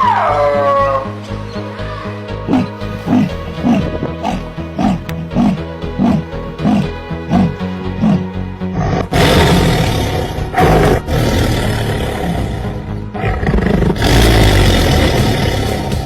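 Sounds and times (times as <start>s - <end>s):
music: 0.0s - 16.0s
large animal roaring: 2.5s - 16.0s.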